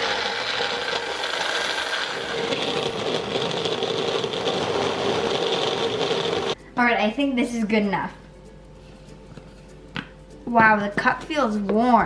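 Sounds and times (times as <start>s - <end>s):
electric blender chopping foam: 0.0s - 6.6s.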